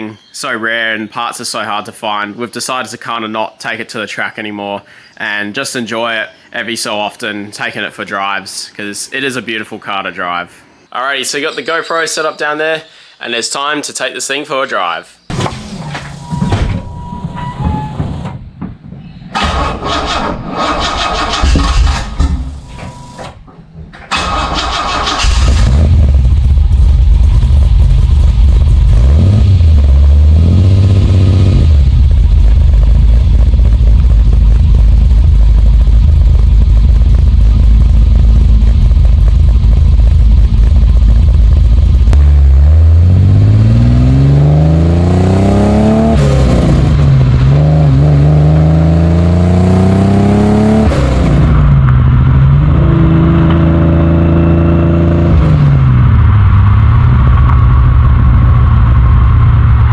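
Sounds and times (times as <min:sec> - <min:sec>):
car engine revving: 0:24.1 - 0:59.9.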